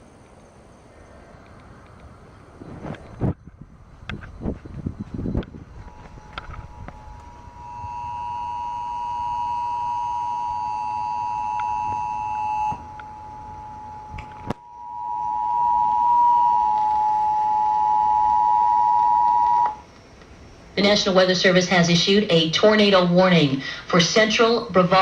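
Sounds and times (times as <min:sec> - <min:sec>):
two-note alert tone: 0:05.9 - 0:19.8.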